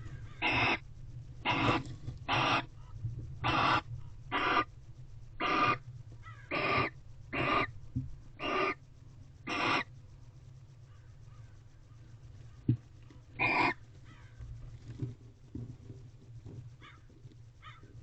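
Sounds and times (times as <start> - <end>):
steady low hum: 0.0 - 18.0
owl rasping hiss calls: 0.3 - 0.8, 1.4 - 4.7, 5.4 - 7.7, 8.4 - 8.8, 9.4 - 9.9, 13.4 - 14.3.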